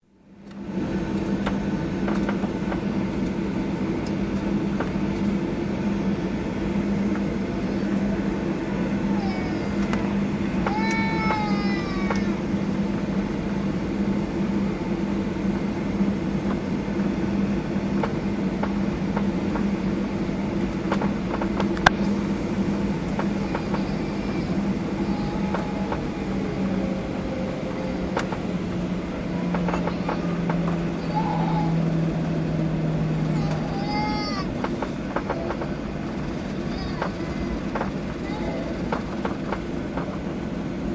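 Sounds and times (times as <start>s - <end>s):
airplane cabin hum: 0.0s - 40.9s
high wavering cry: 30.2s - 32.0s.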